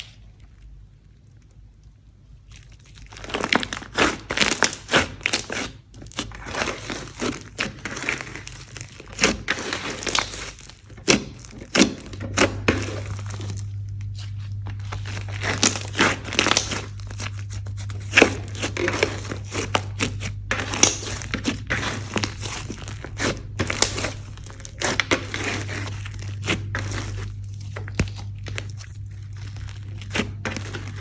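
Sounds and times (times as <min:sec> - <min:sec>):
steady low hum: 0:00.0 - 0:31.0
slime crackling and popping: 0:02.4 - 0:31.0.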